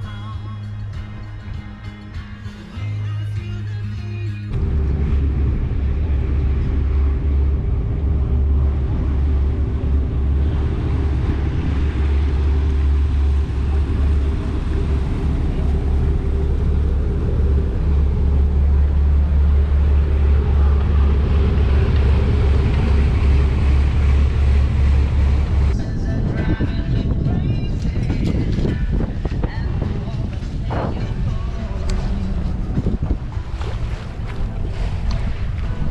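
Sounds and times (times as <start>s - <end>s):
music: 0.0s - 7.4s, 25.7s - 35.9s
boat engine droning: 3.5s - 35.9s
wind and water hiss: 4.6s - 35.9s.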